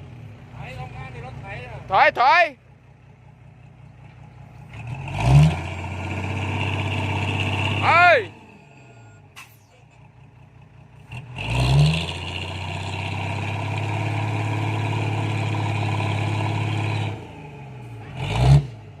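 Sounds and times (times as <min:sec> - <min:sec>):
diesel engine revving: 0:00.0 - 0:19.0.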